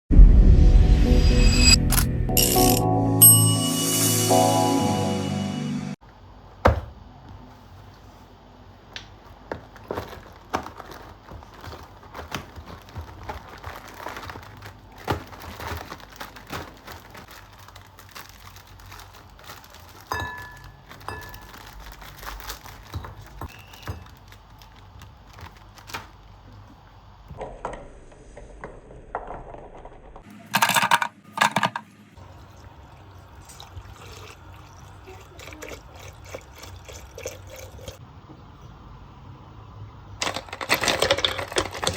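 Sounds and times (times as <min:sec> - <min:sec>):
packaging rustling: 0:09.1 - 0:26.6, 0:40.2 - 0:41.9
utensils clicking and knocking: 0:30.3 - 0:31.9.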